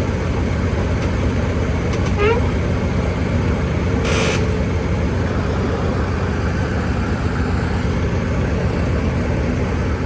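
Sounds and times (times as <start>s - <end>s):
diesel engine rumbling: 0.0s - 10.0s
short hiss: 4.0s - 4.5s.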